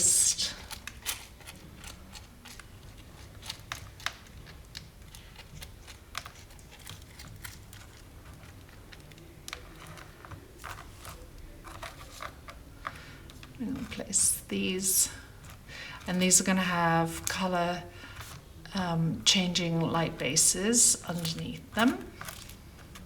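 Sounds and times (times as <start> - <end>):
seashells clicking and tapping: 0.5 - 14.1.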